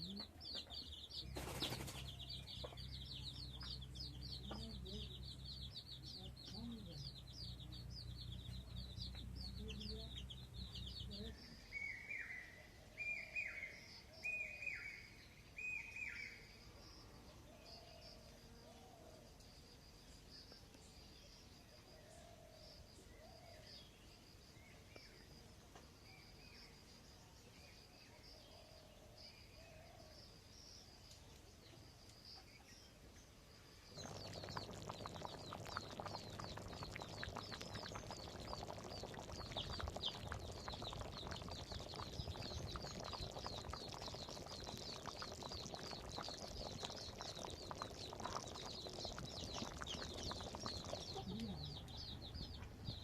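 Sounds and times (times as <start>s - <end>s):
chorus of small birds chirping: 0.0s - 25.3s, 33.9s - 53.0s
birds calling: 34.0s - 53.0s.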